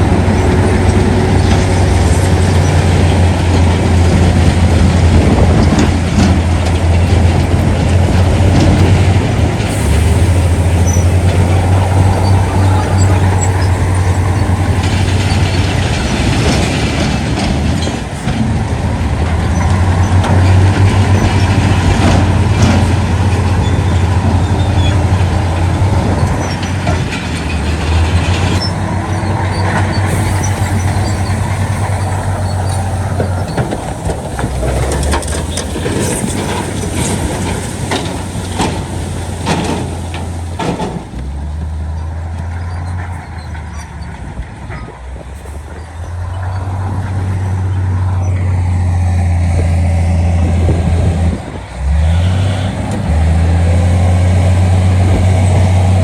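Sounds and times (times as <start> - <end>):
diesel engines droning: 0.0 - 56.0.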